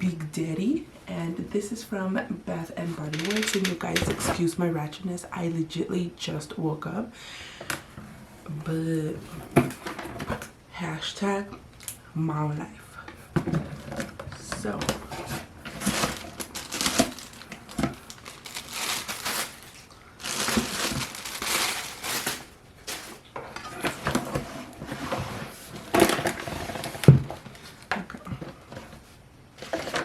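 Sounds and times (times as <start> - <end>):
packing material crinkling: 15.0 - 23.3.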